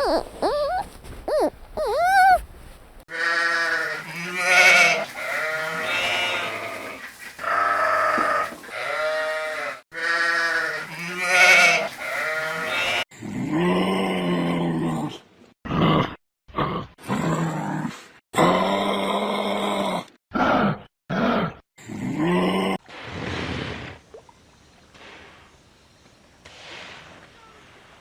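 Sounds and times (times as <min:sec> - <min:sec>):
livestock bleating: 0:00.0 - 0:02.4, 0:03.1 - 0:13.0
low drawn-out animal call: 0:00.0 - 0:02.4.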